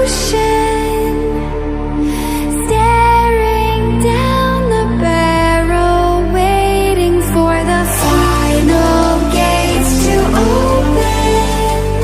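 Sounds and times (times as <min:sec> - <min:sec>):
electronic music: 0:00.0 - 0:12.0.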